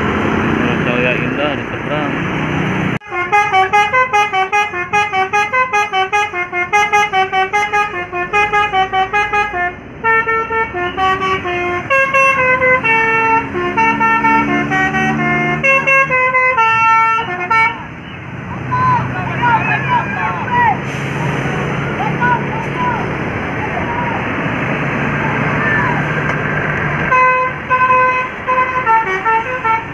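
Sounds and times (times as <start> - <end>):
multi-tone air horn playing a tune: 3.0 - 17.9, 27.1 - 29.9.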